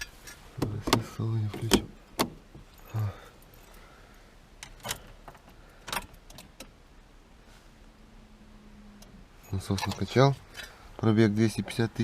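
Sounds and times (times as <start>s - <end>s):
sharp clicks and knocks: 0.0s - 2.7s.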